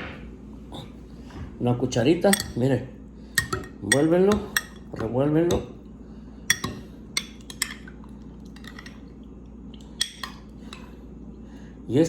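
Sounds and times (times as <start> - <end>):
spoon clinking in a container: 2.3 - 2.7, 3.4 - 5.7, 6.5 - 8.0, 8.6 - 9.0, 10.0 - 10.9.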